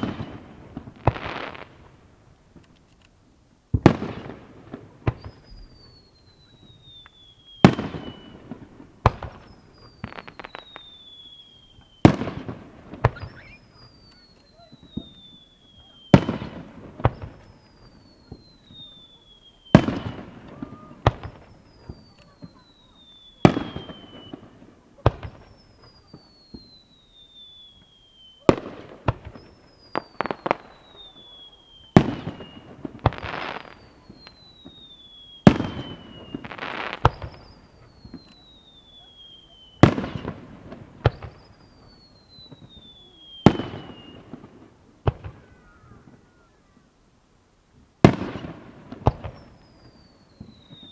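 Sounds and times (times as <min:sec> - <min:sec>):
fireworks bangs and crackle: 0:00.0 - 0:02.9, 0:03.7 - 0:46.6, 0:47.7 - 0:50.9
high whistle gliding downward: 0:05.2 - 0:08.5, 0:09.4 - 0:12.2, 0:13.1 - 0:16.5, 0:17.1 - 0:24.6, 0:25.5 - 0:28.5, 0:29.3 - 0:40.3, 0:41.2 - 0:44.3.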